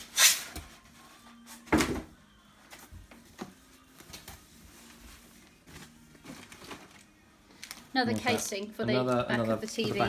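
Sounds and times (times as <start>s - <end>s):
plastic packaging scraping rustles: 4.1s - 8.5s.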